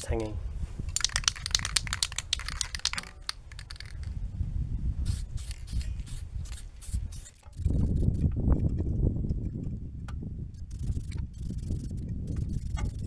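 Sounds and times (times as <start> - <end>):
paint spray hissing strokes: 0.9 - 4.2, 5.0 - 7.4.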